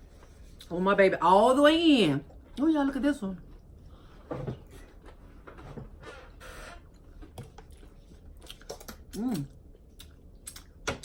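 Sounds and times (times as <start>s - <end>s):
chewing and biting: 7.3s - 10.8s.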